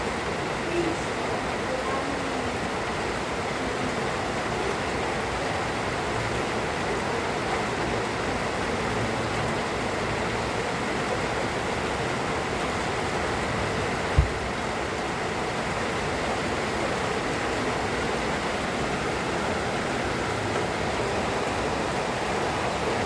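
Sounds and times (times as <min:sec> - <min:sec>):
rain falling steadily: 0:00.0 - 0:23.0
low thump: 0:14.2 - 0:14.6.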